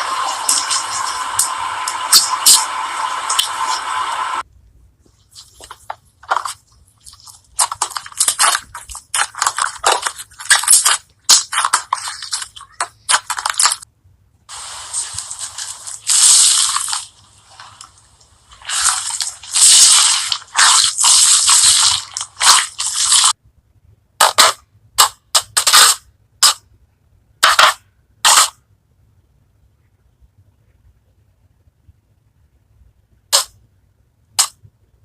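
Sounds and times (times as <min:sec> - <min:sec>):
slime crackling and popping: 0:06.2 - 0:13.8, 0:14.5 - 0:23.4
slime crunchy hissing stretches: 0:14.5 - 0:23.4.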